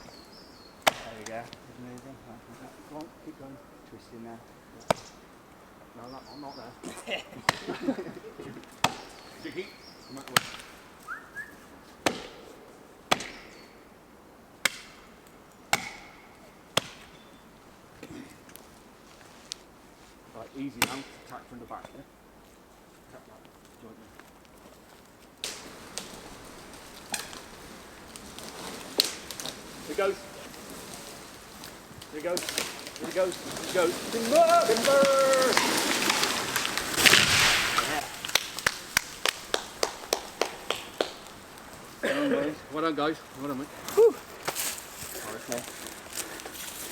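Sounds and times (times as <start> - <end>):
wood cracking sharply: 0.0 - 2.2, 7.4 - 9.4, 10.1 - 13.7, 20.7 - 21.4, 25.4 - 42.2, 43.3 - 46.9
axe chopping into tree trunk: 0.8 - 1.3, 7.4 - 7.8, 8.8 - 9.2, 10.2 - 10.8, 12.0 - 12.5, 13.1 - 13.6, 14.6 - 15.1, 15.7 - 16.2, 16.8 - 17.1, 20.8 - 21.3, 35.6 - 39.3
tree crashing through branches: 25.4 - 46.9.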